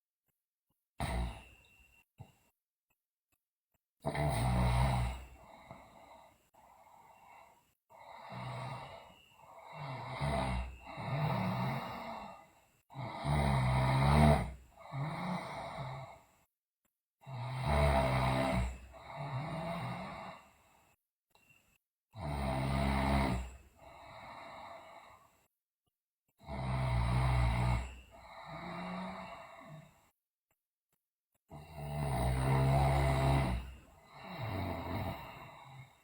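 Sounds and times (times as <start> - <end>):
woman snoring loudly: 1.0 - 1.5, 4.0 - 6.2, 8.0 - 16.2, 17.2 - 20.5, 22.2 - 25.1, 26.4 - 30.0, 31.5 - 36.0.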